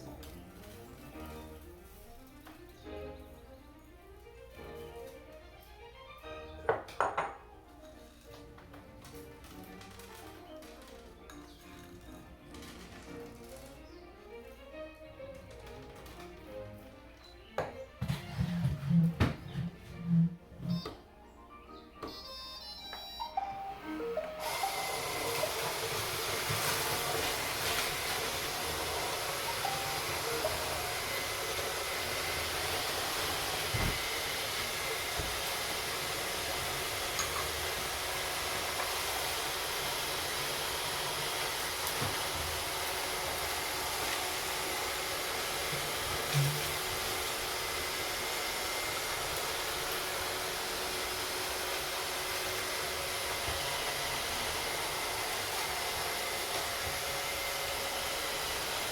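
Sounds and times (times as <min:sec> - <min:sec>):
robot vacuums whirring: 0:22.0 - 0:58.9.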